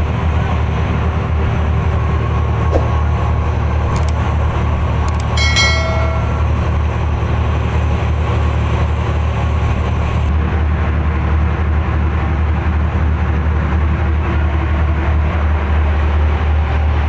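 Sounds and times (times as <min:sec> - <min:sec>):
boat engine droning: 0:00.0 - 0:10.3.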